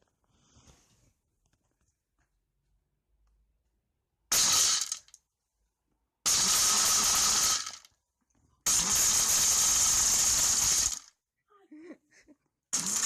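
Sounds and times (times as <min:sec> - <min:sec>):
kitchen blender motor whirring: 0:08.7 - 0:11.0, 0:12.8 - 0:13.0.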